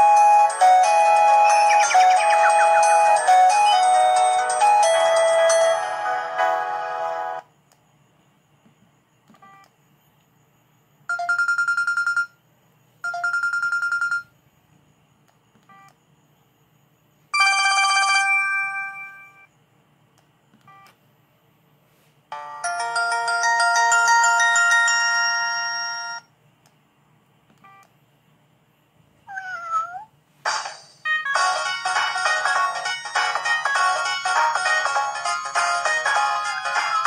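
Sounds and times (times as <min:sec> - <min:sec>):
ringtone melody: 0:00.0 - 0:07.4, 0:17.4 - 0:19.5, 0:22.3 - 0:26.2, 0:30.5 - 0:37.0.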